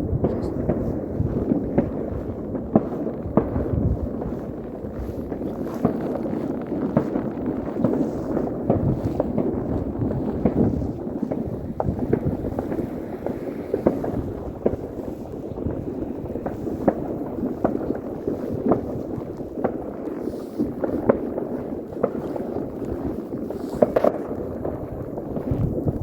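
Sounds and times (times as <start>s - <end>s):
distant fireworks bangs: 0.0s - 26.0s
wind rumbling on microphone: 0.0s - 26.0s.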